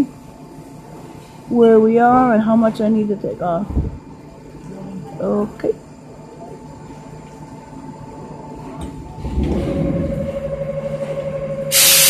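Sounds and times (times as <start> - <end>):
milling machine humming: 5.9 - 12.0
loud hiss: 11.7 - 12.0.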